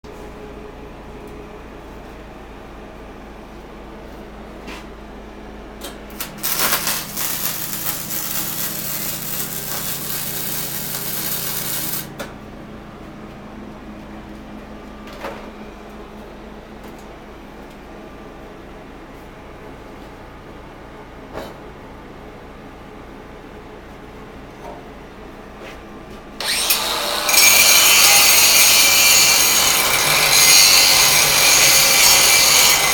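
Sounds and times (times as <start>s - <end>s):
electrical hum: 0.1s - 18.5s
welding arc crackling: 6.1s - 12.1s, 26.4s - 32.9s
power grinder grinding: 6.2s - 12.1s, 26.4s - 32.9s.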